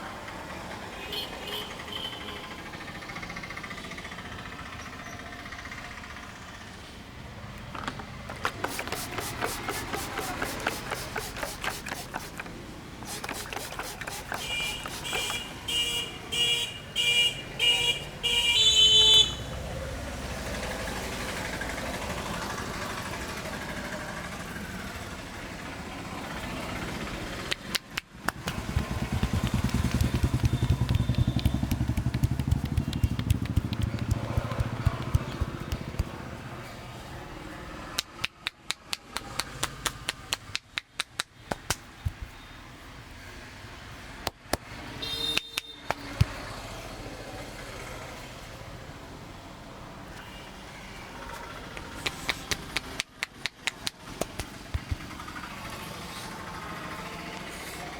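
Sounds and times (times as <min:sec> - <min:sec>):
fast even tapping: 0:08.4 - 0:15.5, 0:27.5 - 0:36.2, 0:52.1 - 0:55.1
vehicle horn short beeps: 0:14.4 - 0:19.4, 0:45.0 - 0:45.9
motorcycle engine running: 0:26.8 - 0:36.4, 0:54.5 - 0:57.3.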